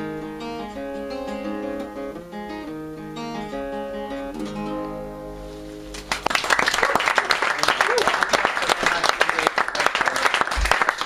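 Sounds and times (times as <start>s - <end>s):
guitar chords ringing: 0.0s - 6.3s
audience applause: 6.0s - 11.0s.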